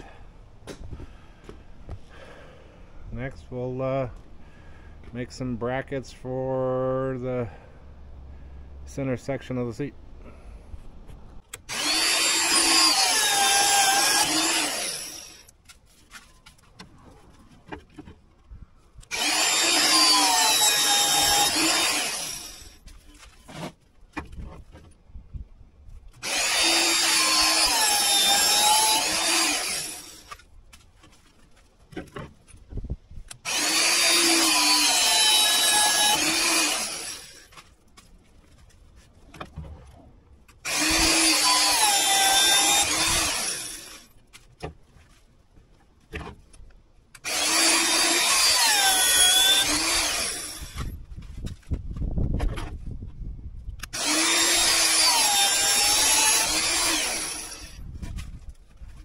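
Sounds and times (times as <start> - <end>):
power tool cutting steel: 11.5 - 15.5, 19.1 - 22.8, 26.2 - 30.4, 33.4 - 37.6, 40.6 - 44.1, 47.2 - 51.0, 53.8 - 57.8.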